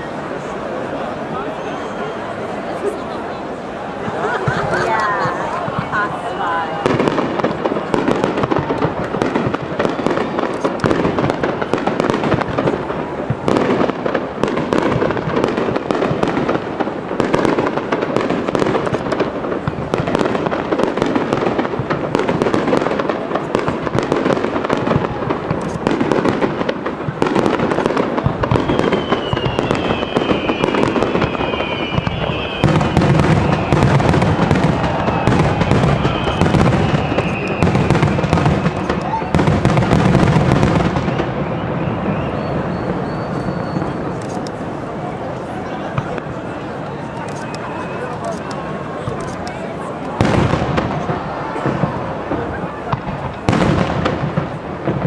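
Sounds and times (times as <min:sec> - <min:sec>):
fireworks crackling and popping: 0:00.0 - 0:55.0
falling firework whistles: 0:01.5 - 0:02.5, 0:05.7 - 0:12.4, 0:27.2 - 0:44.8, 0:46.8 - 0:49.2, 0:50.1 - 0:54.6
low firework booms: 0:06.8 - 0:44.2, 0:50.1 - 0:55.0.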